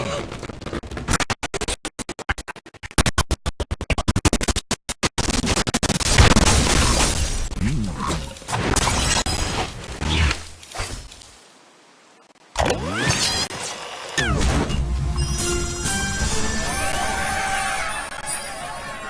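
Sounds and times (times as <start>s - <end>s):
stuttering music: 14.1s - 19.0s.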